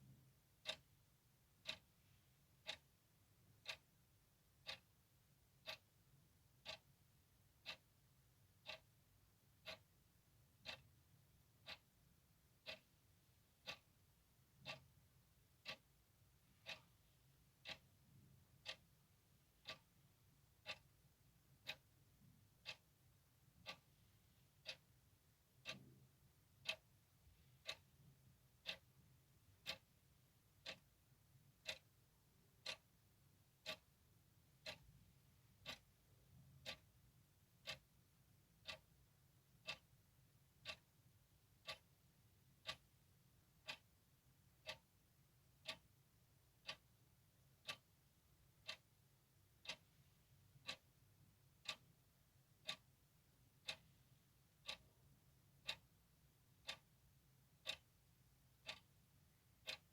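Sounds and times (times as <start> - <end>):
clock ticking: 0.0 - 59.9.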